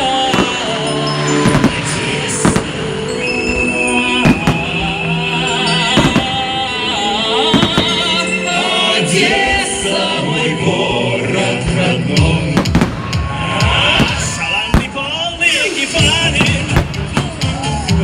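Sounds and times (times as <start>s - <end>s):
fireworks bangs: 0.0s - 3.2s, 4.1s - 8.3s, 12.5s - 17.8s
song with singing: 0.0s - 18.0s.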